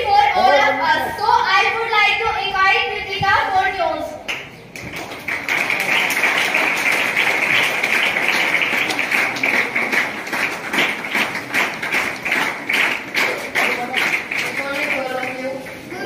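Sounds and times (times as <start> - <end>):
audience applauding: 4.7 - 15.9.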